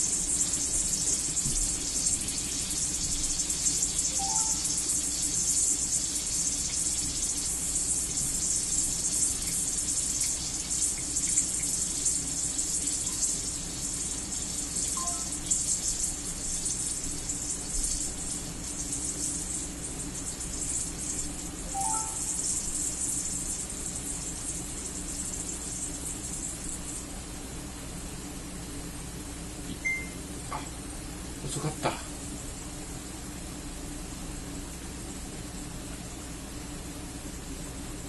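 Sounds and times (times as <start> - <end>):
gas hissing from bottle: 0.0 - 26.9.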